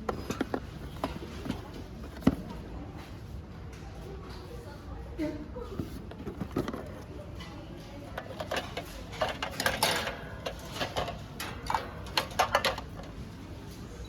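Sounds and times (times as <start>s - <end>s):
kitchen utensils clinking: 7.4s - 13.4s.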